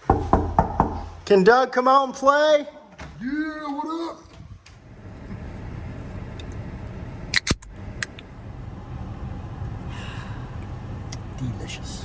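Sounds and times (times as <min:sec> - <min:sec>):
car engine rumbling: 0:04.3 - 0:12.0
sharp clicks: 0:07.4 - 0:08.2.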